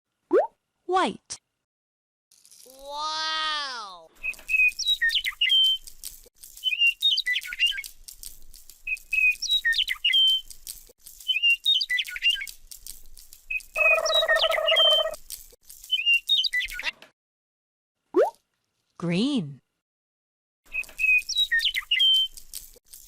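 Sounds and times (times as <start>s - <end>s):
electronic bird chirping: 13.6s - 15.2s.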